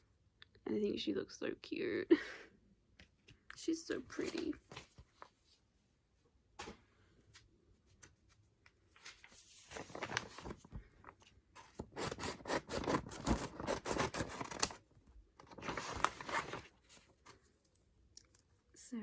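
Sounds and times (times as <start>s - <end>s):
packaging crinkling and tearing: 9.2s - 11.2s, 11.8s - 16.8s.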